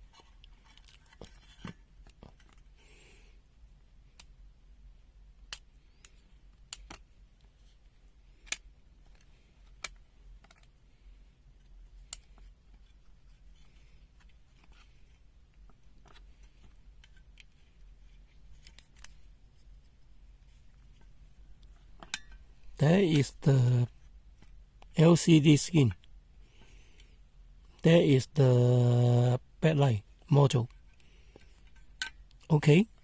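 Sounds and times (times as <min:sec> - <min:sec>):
clicks and taps of handled parts: 0:05.5 - 0:07.5.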